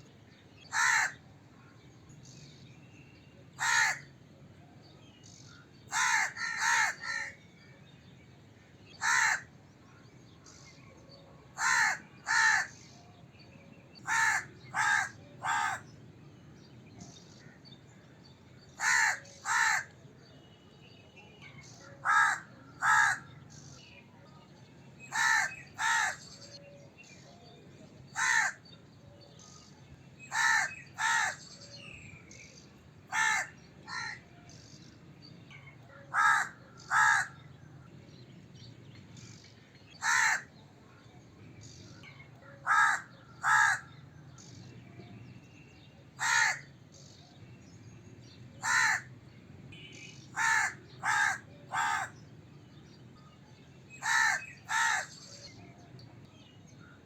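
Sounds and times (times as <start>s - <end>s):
crow cawing: 0.7s - 1.2s, 3.6s - 4.1s, 5.9s - 7.4s, 9.0s - 9.5s, 11.6s - 12.8s, 14.1s - 15.9s, 18.8s - 19.9s, 22.0s - 23.3s, 25.1s - 26.2s, 28.2s - 28.6s, 30.3s - 31.4s, 33.1s - 34.2s, 36.0s - 37.4s, 40.0s - 40.5s, 42.6s - 43.9s, 46.2s - 46.7s, 48.6s - 49.1s, 50.4s - 52.2s, 54.0s - 55.1s.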